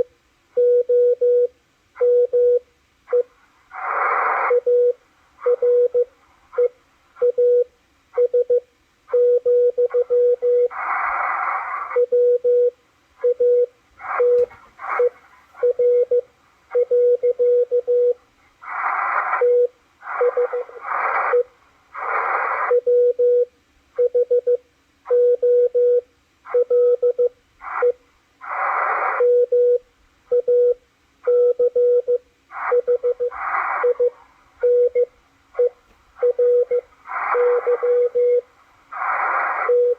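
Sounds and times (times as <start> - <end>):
morse code tone: 19.0 - 21.5, 28.8 - 39.9.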